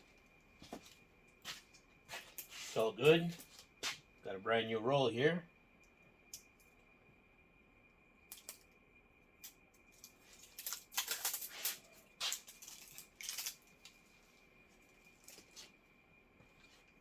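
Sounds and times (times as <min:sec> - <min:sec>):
small clicks: 0:08.3 - 0:08.8
handling noises: 0:09.8 - 0:15.8
tape ripping off a roll: 0:10.2 - 0:13.6.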